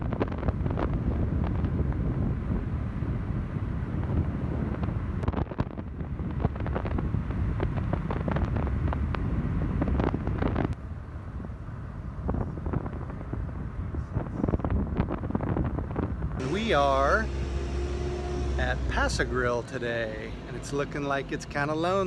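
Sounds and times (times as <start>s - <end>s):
crackles: 0.0s - 2.1s, 4.0s - 10.8s
moving car rumble: 0.0s - 22.0s
wind buffeting microphone: 0.0s - 22.0s.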